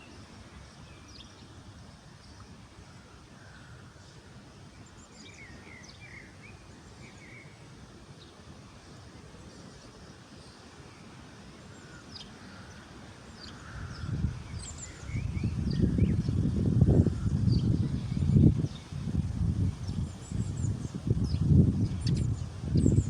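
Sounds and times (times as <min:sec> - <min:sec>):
wind buffeting microphone: 0:13.8 - 0:23.0
small birds chirping: 0:19.8 - 0:23.0.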